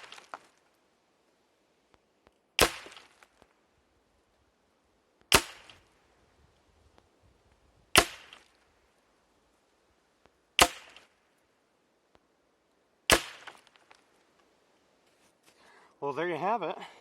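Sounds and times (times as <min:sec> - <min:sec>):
rifle shots sharp crack: 0:00.0 - 0:00.4, 0:02.6 - 0:03.2, 0:05.3 - 0:05.9, 0:07.9 - 0:08.6, 0:10.6 - 0:11.2, 0:13.1 - 0:14.0.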